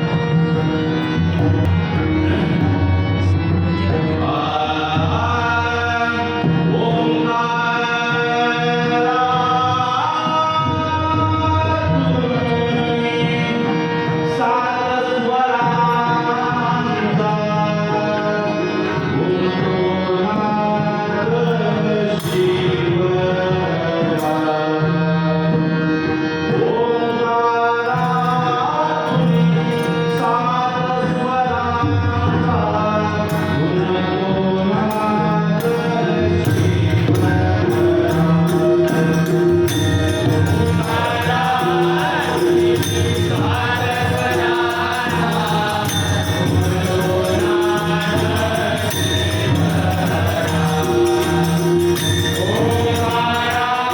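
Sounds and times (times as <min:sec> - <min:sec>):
man singing devotional song: 0:00.0 - 0:53.9
sharp percussive strikes: 0:01.0 - 0:04.0, 0:34.9 - 0:53.9
hand drum rhythm: 0:36.5 - 0:53.9.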